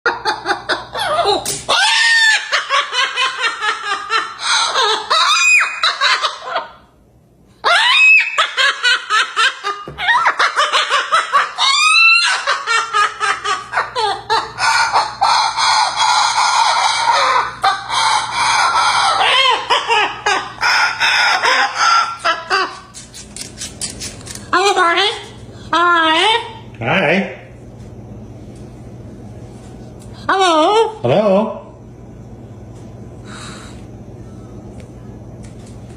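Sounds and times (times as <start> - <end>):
parrot imitating laughter: 0.1 - 6.9, 7.6 - 26.6
parrot squawks: 0.9 - 3.3, 4.4 - 6.8, 7.6 - 8.8, 10.0 - 13.1, 13.7 - 23.2.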